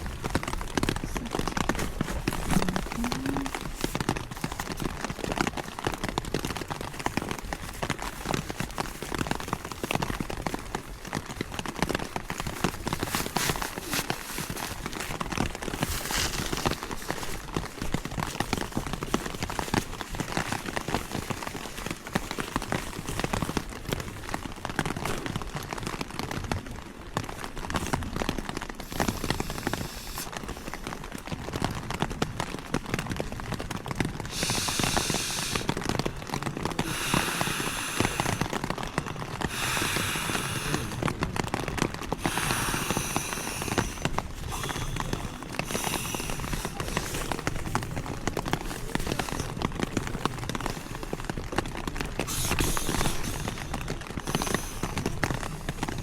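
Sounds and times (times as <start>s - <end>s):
rain pattering on a tent: 0.0s - 56.0s
rustling hiss: 28.8s - 31.0s, 34.2s - 56.0s.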